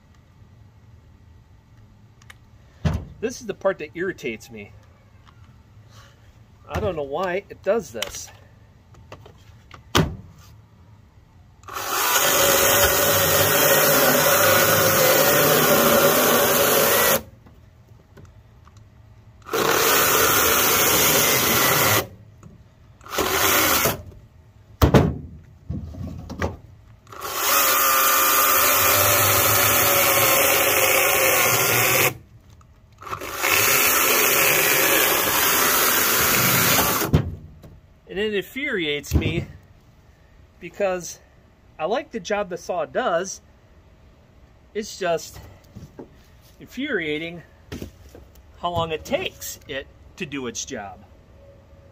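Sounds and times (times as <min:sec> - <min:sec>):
chainsaw cutting a log: 0:11.7 - 0:17.3, 0:19.4 - 0:22.1, 0:23.0 - 0:24.0, 0:27.1 - 0:32.2, 0:33.0 - 0:37.1.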